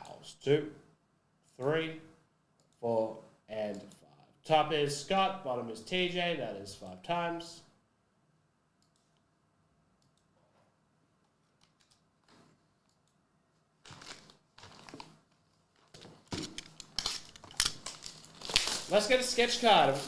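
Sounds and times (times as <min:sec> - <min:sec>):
faint clicks: 0:08.8 - 0:09.3
foil wrapper crinkling and tearing: 0:13.8 - 0:20.0.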